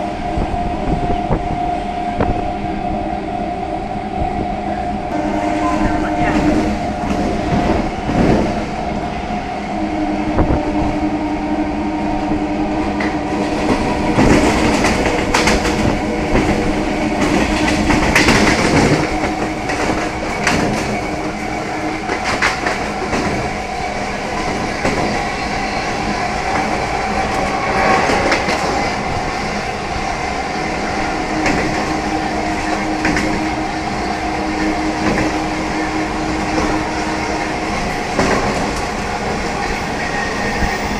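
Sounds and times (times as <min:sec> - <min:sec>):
train wheels knocking over rail joints: 0:13.0 - 0:29.2, 0:38.1 - 0:39.0.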